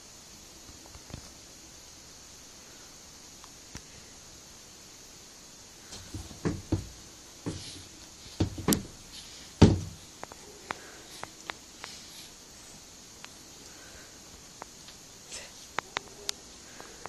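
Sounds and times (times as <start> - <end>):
cats bumping against things: 5.9 - 7.8, 8.4 - 9.0, 9.6 - 10.0.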